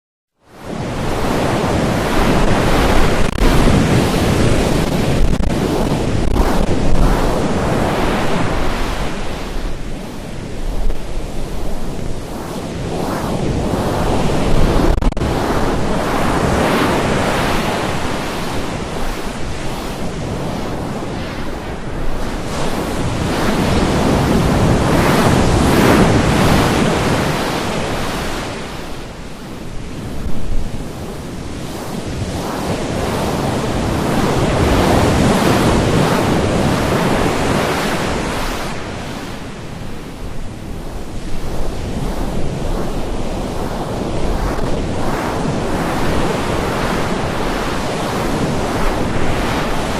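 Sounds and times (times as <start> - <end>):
loud rushing noise: 2.1 - 17.8.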